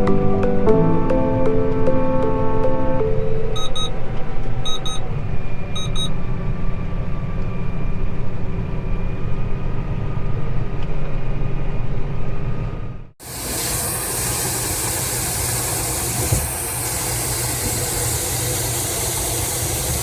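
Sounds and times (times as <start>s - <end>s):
short electronic beeps: 3.2s - 3.9s, 4.6s - 5.0s, 5.7s - 6.2s.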